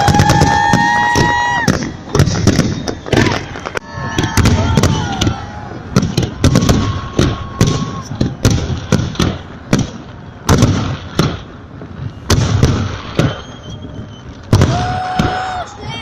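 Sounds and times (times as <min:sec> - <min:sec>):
fireworks bangs: 0:00.0 - 0:16.0.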